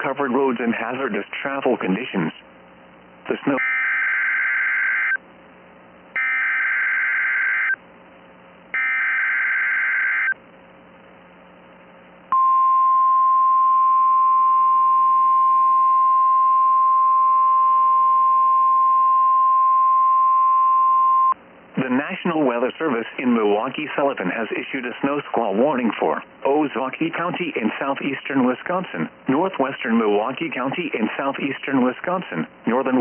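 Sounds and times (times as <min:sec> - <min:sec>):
steady alarm tone: 0:03.6 - 0:05.2, 0:06.2 - 0:07.8, 0:08.7 - 0:10.4
raspy data buzzes: 0:06.2 - 0:07.8, 0:08.7 - 0:10.4.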